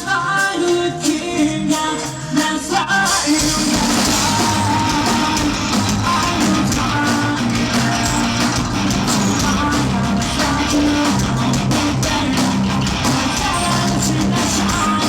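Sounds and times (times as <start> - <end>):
distorted electric guitars: 0.0 - 15.0
drums: 0.0 - 15.0
bass guitar: 3.4 - 15.0.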